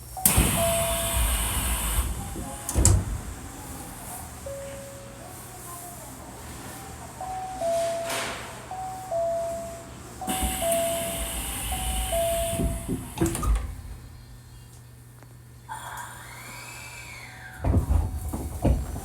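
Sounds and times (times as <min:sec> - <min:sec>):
train doors hissing: 0:00.0 - 0:14.8, 0:15.7 - 0:19.0
two-note door chime: 0:00.2 - 0:03.0, 0:04.4 - 0:05.9, 0:07.2 - 0:13.9
doors knocking shut: 0:00.3 - 0:03.6, 0:10.3 - 0:14.4, 0:17.6 - 0:19.0.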